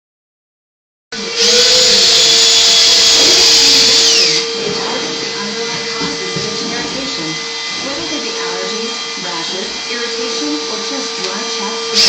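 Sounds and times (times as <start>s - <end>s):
power drill whining: 1.2s - 12.0s
steady hum: 3.2s - 11.9s.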